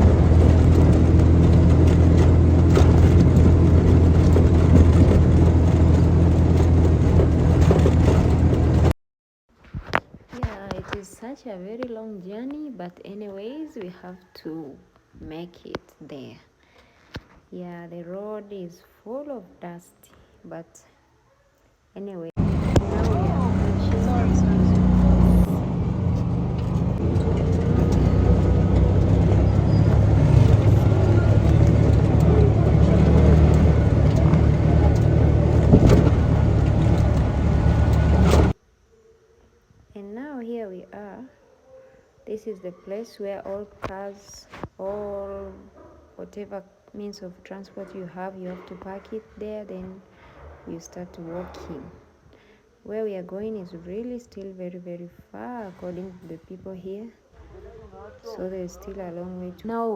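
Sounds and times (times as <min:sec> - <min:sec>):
vehicle engine and road rumble: 0:00.0 - 0:09.0, 0:22.3 - 0:38.6.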